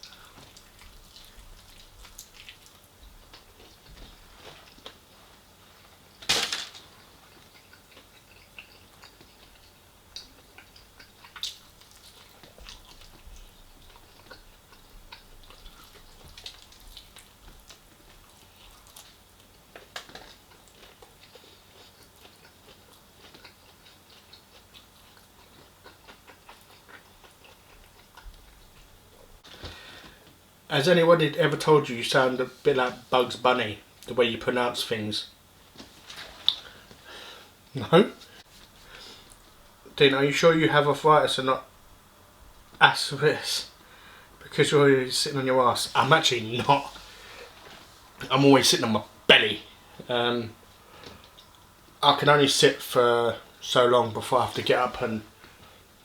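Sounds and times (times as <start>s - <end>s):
chewing fried chicken: 0.0s - 6.2s, 6.9s - 30.3s.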